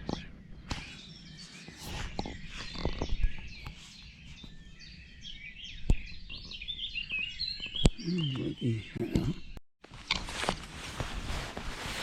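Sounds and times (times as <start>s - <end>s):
birds chirping and trilling: 0.0s - 9.6s.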